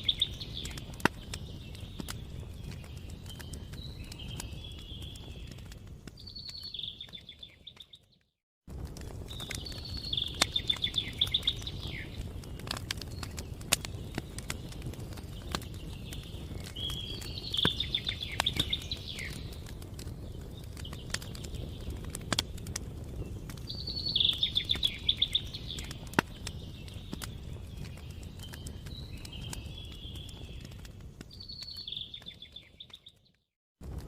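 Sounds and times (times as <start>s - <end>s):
wood fire crackling and popping: 0.0s - 34.0s
songbird trilling: 9.6s - 12.1s, 23.7s - 25.9s.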